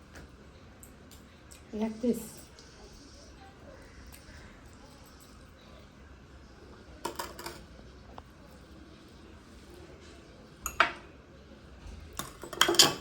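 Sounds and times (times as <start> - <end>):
dishware clinking: 7.1 - 7.6, 10.6 - 11.1, 12.2 - 13.0.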